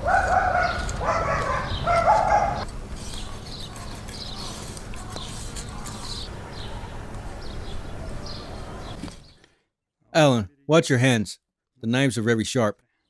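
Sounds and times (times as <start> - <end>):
dog barking: 0.0 - 2.7.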